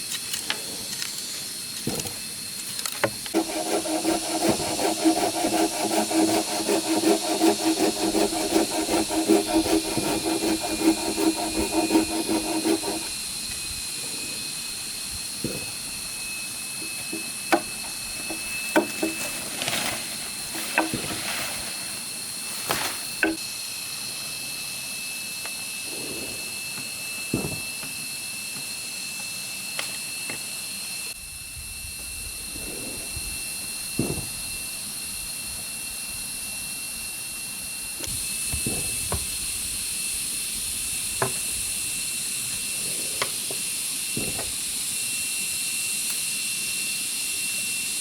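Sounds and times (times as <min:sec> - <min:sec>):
saw rasping through bamboo: 0:03.3 - 0:13.5, 0:16.7 - 0:19.5, 0:20.2 - 0:21.8.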